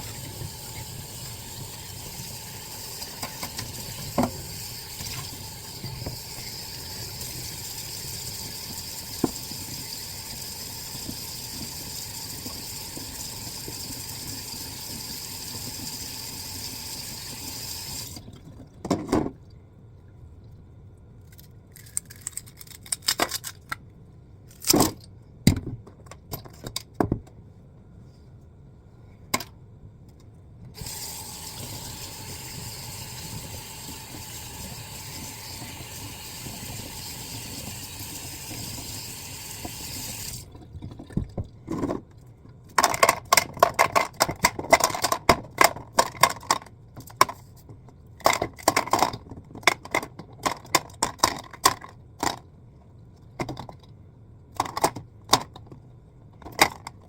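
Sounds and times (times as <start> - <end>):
water running: 0.0 - 18.4, 30.8 - 40.5.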